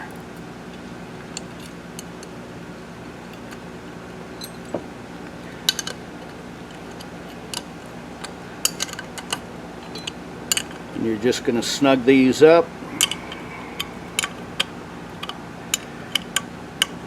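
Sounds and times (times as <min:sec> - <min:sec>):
steady hum: 0:00.0 - 0:17.0
metal hardware clinking: 0:04.4 - 0:04.9, 0:05.5 - 0:06.0, 0:06.6 - 0:11.0, 0:12.9 - 0:17.0.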